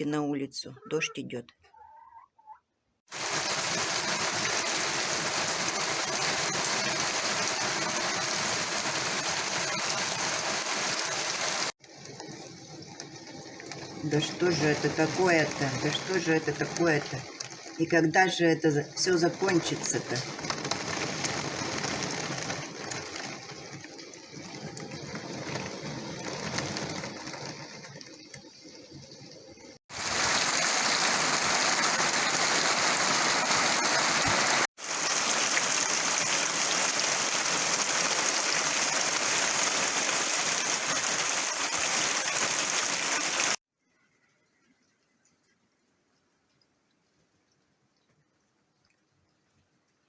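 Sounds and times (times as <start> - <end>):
heavy rain downpour: 3.1 - 12.2, 13.4 - 17.8, 19.3 - 28.0, 29.9 - 43.6
light rain patter: 3.1 - 50.0.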